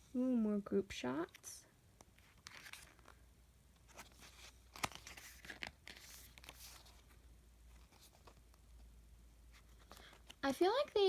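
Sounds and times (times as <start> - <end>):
paper rustling: 2.1 - 3.2, 3.8 - 8.9, 9.5 - 11.0.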